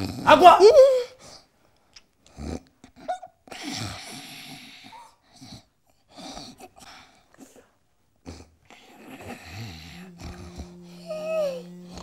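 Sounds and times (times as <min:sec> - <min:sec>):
person snoring: 0:09.1 - 0:12.0.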